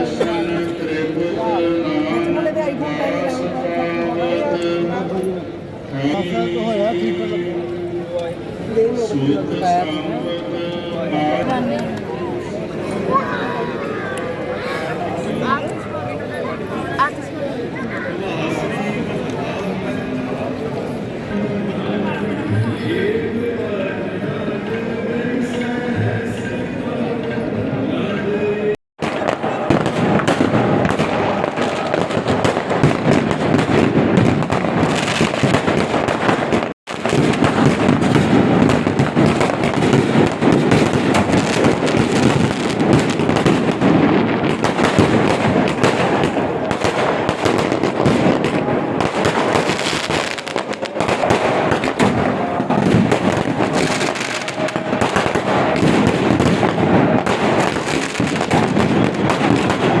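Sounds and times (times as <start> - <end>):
firecrackers banging and crackling: 29.0 - 60.0.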